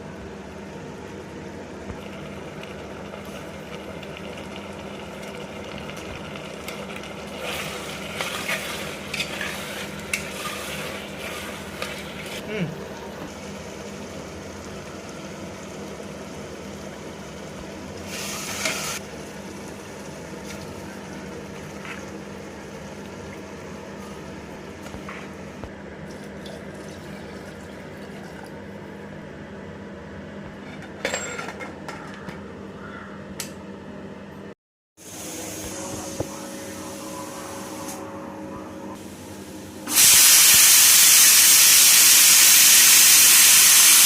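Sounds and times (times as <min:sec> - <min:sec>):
liquid simmering in a pot: 0:01.0 - 0:12.4
steady low hum: 0:28.7 - 0:40.0.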